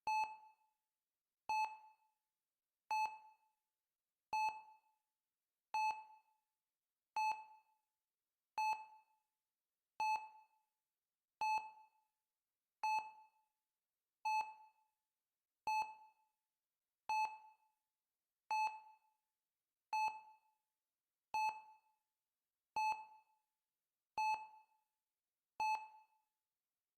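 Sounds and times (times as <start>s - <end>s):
heart-rate monitor beeping: 0.1s - 0.4s, 1.5s - 1.9s, 2.9s - 3.2s, 5.8s - 6.0s, 18.5s - 18.8s, 21.3s - 21.6s, 22.8s - 23.1s, 24.2s - 24.6s, 25.6s - 26.1s.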